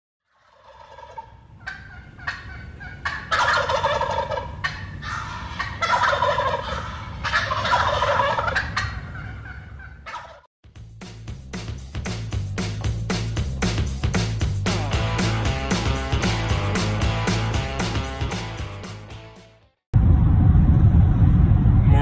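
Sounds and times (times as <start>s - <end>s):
turkey gobbling: 0.3s - 10.5s.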